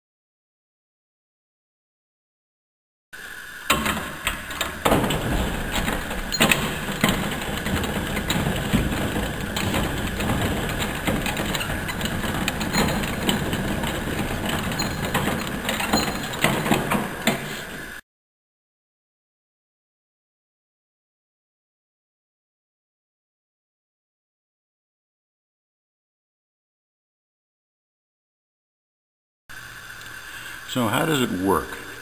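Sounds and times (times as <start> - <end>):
mechanism clicking and rattling: 3.7 - 17.8.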